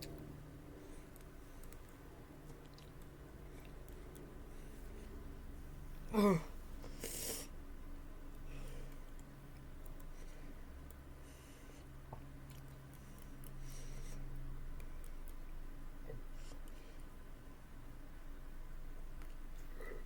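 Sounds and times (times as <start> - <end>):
low steady hum: 0.0 - 20.0
person breathing quietly: 6.2 - 7.6, 8.4 - 9.2, 10.0 - 12.1, 12.9 - 14.4, 19.6 - 20.0.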